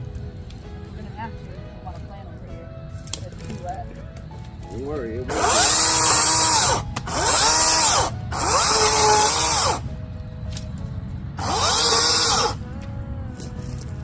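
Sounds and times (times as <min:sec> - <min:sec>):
electric chainsaw whining: 0:05.2 - 0:09.9, 0:11.4 - 0:12.6.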